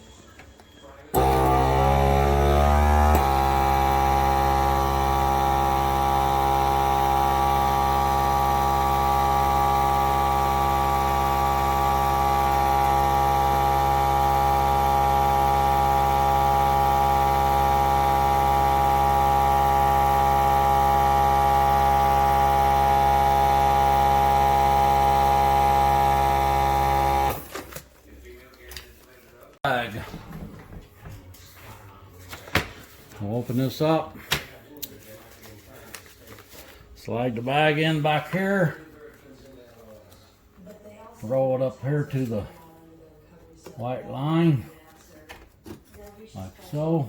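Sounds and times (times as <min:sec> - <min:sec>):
vacuum sealer pump motor humming: 0:01.1 - 0:27.7.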